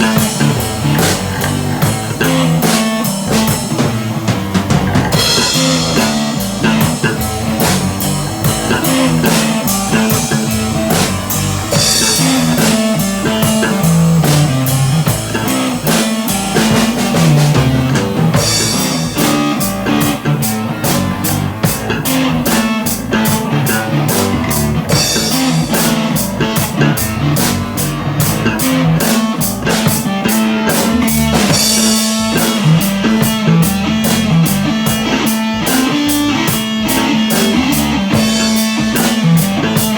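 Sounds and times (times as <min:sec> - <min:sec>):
cymbal crash: 0:00.0 - 0:20.2, 0:31.1 - 0:33.4
drum kit beat: 0:00.0 - 0:39.9
rock guitar: 0:00.0 - 0:39.9.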